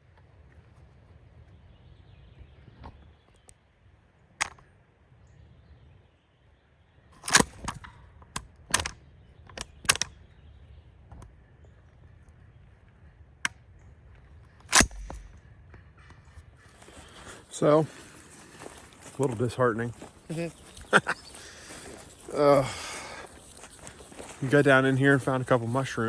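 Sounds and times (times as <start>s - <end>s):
faint outdoor background: 0.0s - 26.0s.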